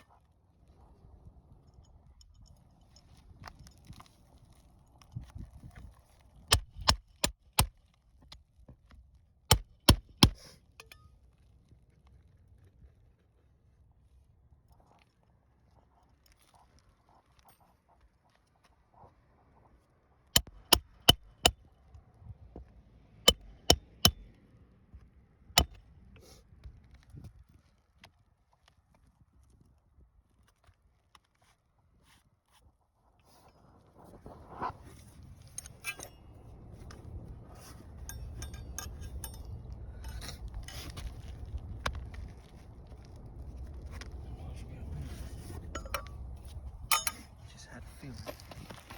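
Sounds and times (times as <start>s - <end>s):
hammer striking nails: 6.5s - 7.7s, 9.5s - 10.4s, 20.4s - 21.6s, 23.3s - 24.3s, 25.6s - 25.8s
tools scraping on shingles: 35.4s - 41.5s.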